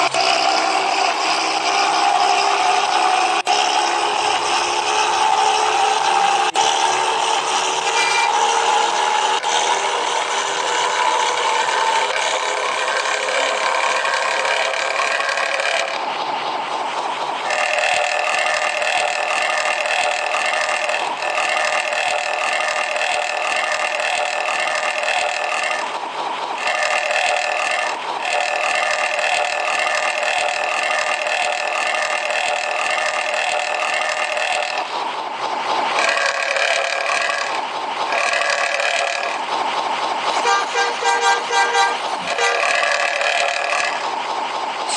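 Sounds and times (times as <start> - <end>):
bus air horn blasts: 6.5 - 9.6, 40.4 - 43.2.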